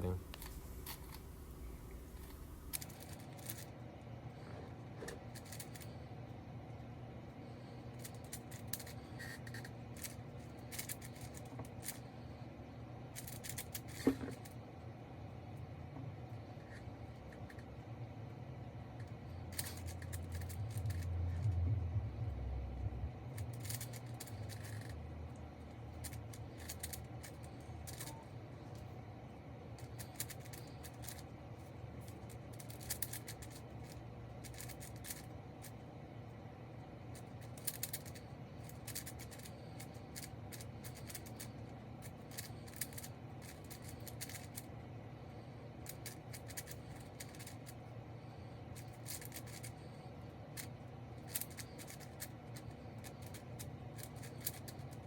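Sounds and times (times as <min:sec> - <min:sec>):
low handling rumble: 0:00.0 - 0:02.9, 0:19.3 - 0:26.4
plastic clicks of cube turning: 0:23.4 - 0:25.0, 0:32.6 - 0:35.3, 0:37.4 - 0:41.5, 0:45.9 - 0:47.7, 0:48.8 - 0:49.7, 0:51.3 - 0:54.9.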